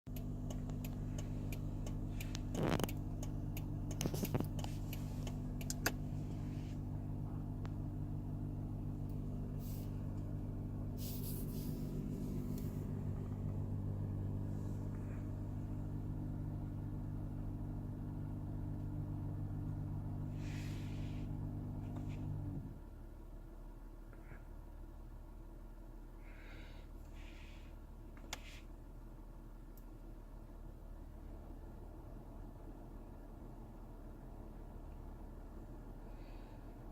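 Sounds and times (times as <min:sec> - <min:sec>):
air conditioning droning hum: 0:00.1 - 0:36.9.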